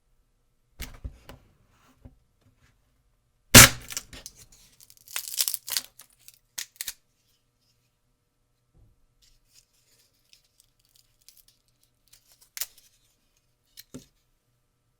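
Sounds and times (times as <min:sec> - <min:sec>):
sticks and twigs snapping: 0:04.9 - 0:05.9, 0:06.6 - 0:07.0.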